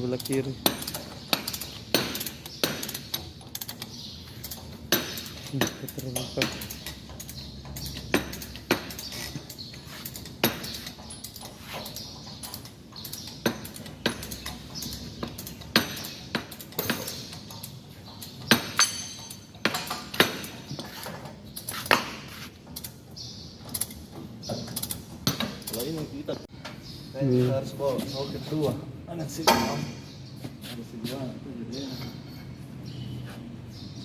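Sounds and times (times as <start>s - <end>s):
metal tools clinking: 0.0s - 22.0s.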